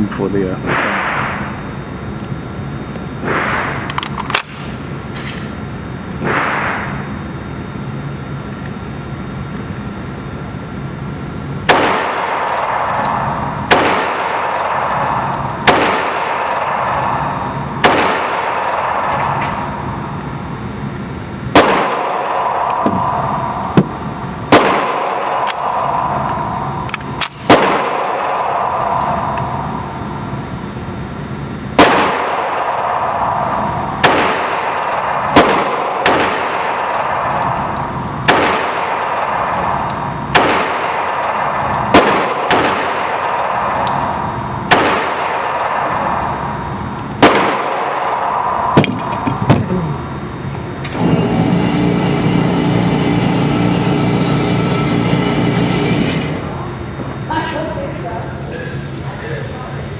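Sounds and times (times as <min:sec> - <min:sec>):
pistol shots: 0:03.2 - 0:04.8, 0:11.6 - 0:19.7, 0:21.5 - 0:29.4, 0:31.8 - 0:46.5, 0:47.2 - 0:49.6.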